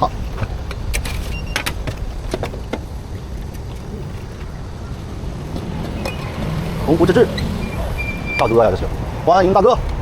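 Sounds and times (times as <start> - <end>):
street background rumble: 0.0 - 10.0
sharp clicks and knocks: 0.4 - 3.9.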